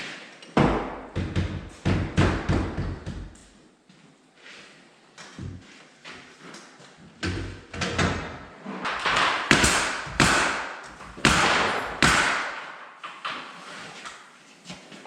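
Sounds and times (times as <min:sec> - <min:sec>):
nails hammered into door frame: 0:00.6 - 0:03.5, 0:08.9 - 0:13.0.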